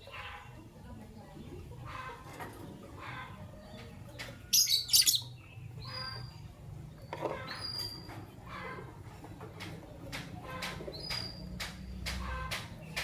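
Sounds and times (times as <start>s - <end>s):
lovebirds shrieking and chirping: 1.8s - 9.0s, 10.4s - 13.0s.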